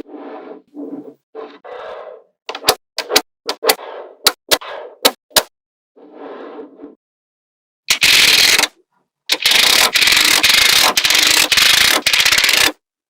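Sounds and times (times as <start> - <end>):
magnetic balls clicking together: 9.3 - 12.8.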